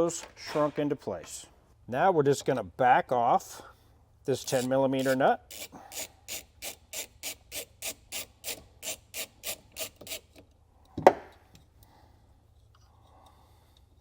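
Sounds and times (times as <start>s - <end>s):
hand ratchet rasping: 4.4s - 10.5s.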